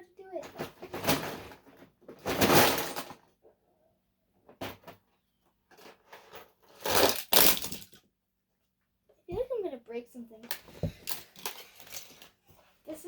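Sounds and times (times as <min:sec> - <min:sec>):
drawer of toys rattling: 0:00.3 - 0:03.2, 0:05.7 - 0:07.9, 0:10.9 - 0:12.3.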